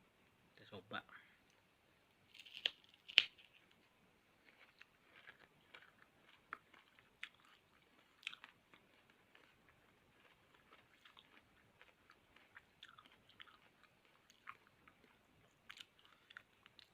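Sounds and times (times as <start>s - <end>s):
person biting and chewing crunchily: 2.3s - 3.8s, 4.4s - 16.9s.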